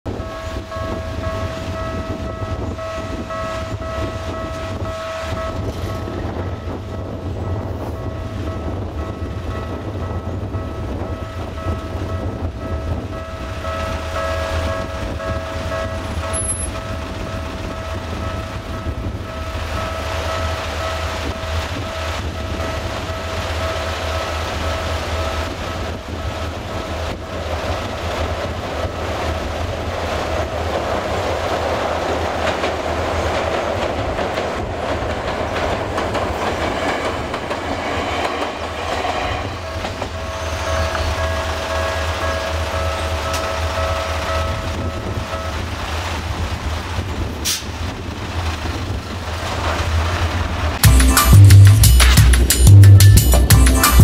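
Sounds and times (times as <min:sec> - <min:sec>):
level crossing alarm clanging: 0:00.1 - 0:24.0
train rumble and wheel noise: 0:00.1 - 0:54.0.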